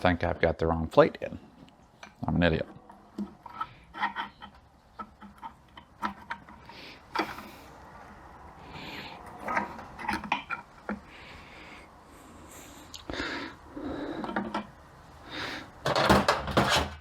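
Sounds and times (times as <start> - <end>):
metal scraping: 2.4 - 7.9, 15.8 - 17.0
metal plates clinking: 15.8 - 17.0.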